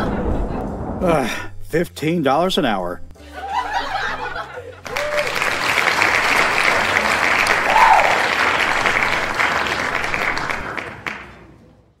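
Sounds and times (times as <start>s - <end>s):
audience applause: 4.8s - 11.4s.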